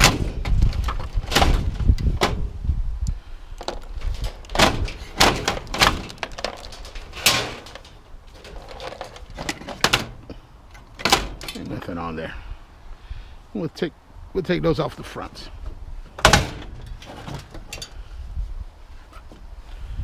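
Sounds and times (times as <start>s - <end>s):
scrap metal clanking: 3.6s - 11.8s, 16.1s - 18.0s.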